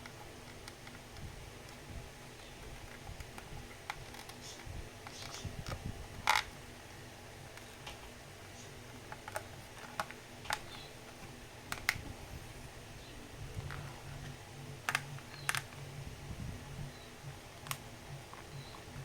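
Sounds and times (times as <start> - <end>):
plastic parts clicking and tapping: 0.0 - 1.8, 2.4 - 6.5, 9.1 - 12.0, 13.5 - 15.8, 17.6 - 19.0.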